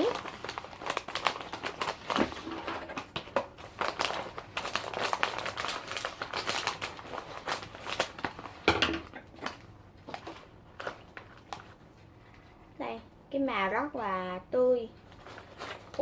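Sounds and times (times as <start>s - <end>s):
plastic snack bag crackling: 0.0s - 11.8s, 15.1s - 16.0s.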